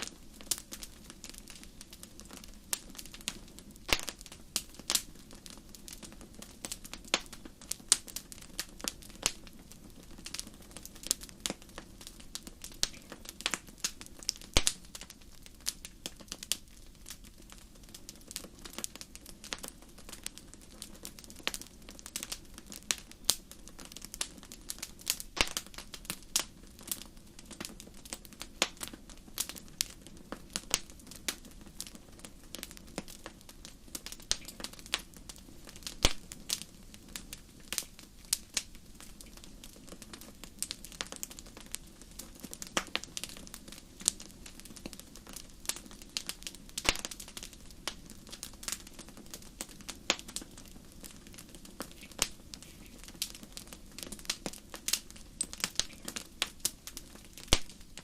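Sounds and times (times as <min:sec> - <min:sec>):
wood fire crackling and popping: 0:00.0 - 0:58.0.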